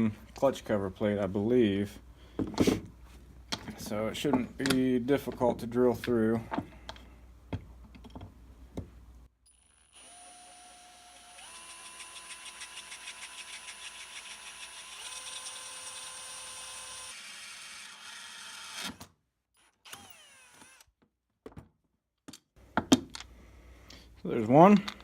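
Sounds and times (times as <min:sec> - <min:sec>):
power drill boring through metal: 0:09.5 - 0:19.0, 0:19.6 - 0:20.9.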